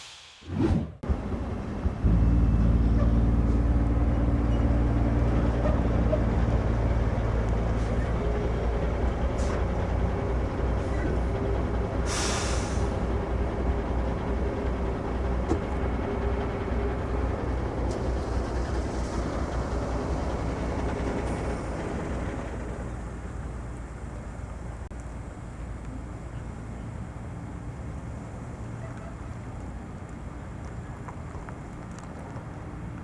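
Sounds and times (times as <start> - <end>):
air hiss: 0.0 - 0.5, 12.0 - 13.0
large engine running: 1.0 - 24.9.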